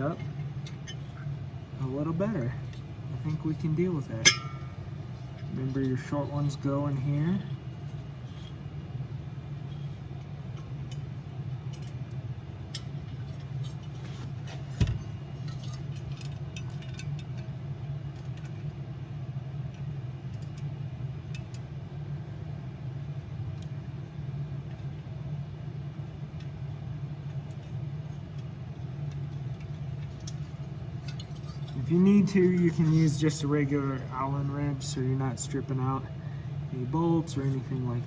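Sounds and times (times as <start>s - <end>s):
steady low hum: 0.0s - 38.0s
metal parts clicking and clinking: 15.4s - 17.5s, 29.1s - 33.4s.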